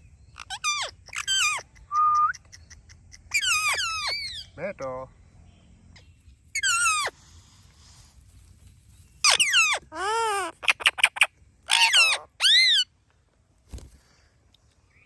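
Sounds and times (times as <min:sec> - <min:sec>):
parakeet screeching: 0:00.4 - 0:01.6, 0:03.3 - 0:04.6, 0:06.5 - 0:07.2, 0:09.2 - 0:12.9.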